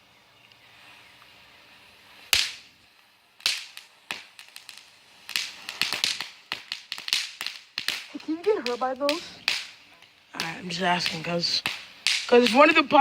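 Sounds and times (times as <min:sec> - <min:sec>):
bang snaps cracking: 0:02.3 - 0:02.7, 0:03.4 - 0:12.8.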